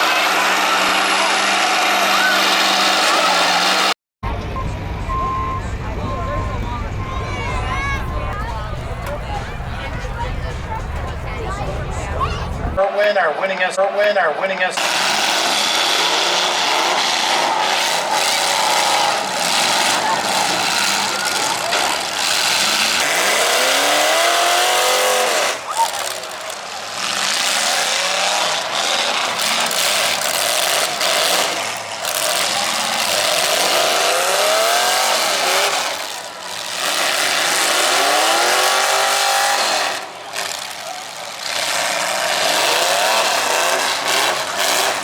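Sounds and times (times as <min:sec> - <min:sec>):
noisy din: 0:00.0 - 0:26.8
diesel engines revving: 0:00.0 - 0:45.0.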